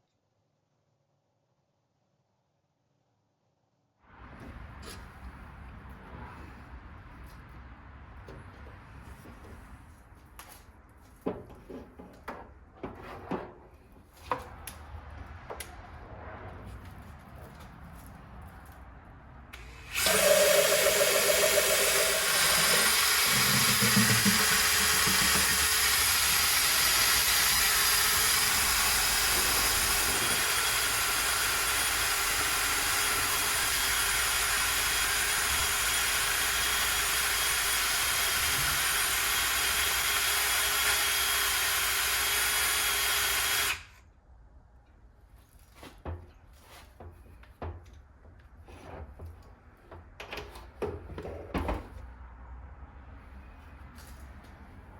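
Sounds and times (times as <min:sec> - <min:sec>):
chainsaw running: 0:19.6 - 0:43.9.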